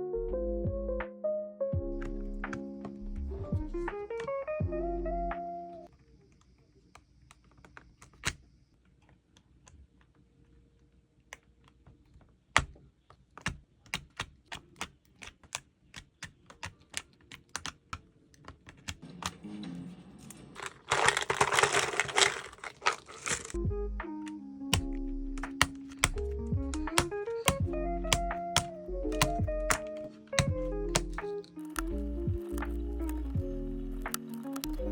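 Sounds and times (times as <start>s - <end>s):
mechanical keyboard typing: 13.4s - 19.5s, 20.6s - 23.6s, 24.2s - 34.9s.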